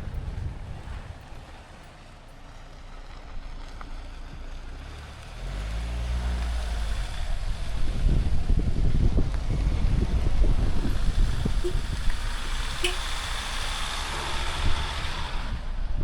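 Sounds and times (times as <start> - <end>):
wind buffeting microphone: 0.0 - 1.9, 6.8 - 16.0
car engine rumble: 0.0 - 16.0
road noise: 0.0 - 16.0.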